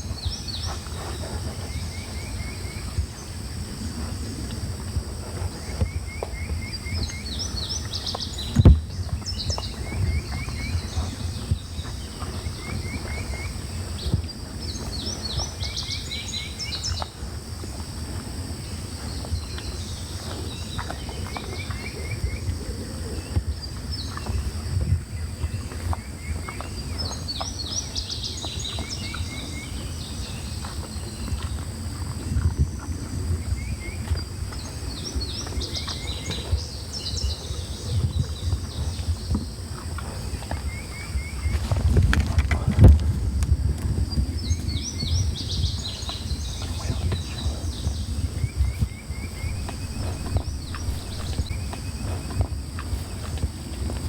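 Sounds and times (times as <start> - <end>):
songbird chirping: 33.3 - 43.1, 43.9 - 54.0
steady low rumble: 39.7 - 54.0.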